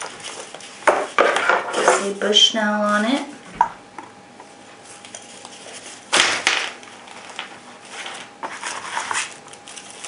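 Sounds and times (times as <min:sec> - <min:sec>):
rustling and clicks of handling: 0:00.0 - 0:03.3.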